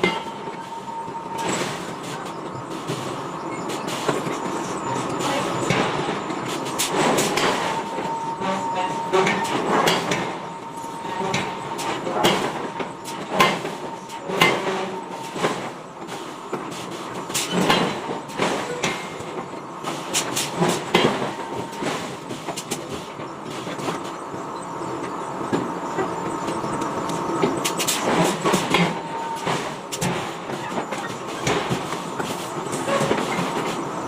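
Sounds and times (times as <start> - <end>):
metal clanking and knocking: 0.0 - 2.4, 3.5 - 15.8, 16.5 - 19.5
machinery droning: 0.0 - 34.0.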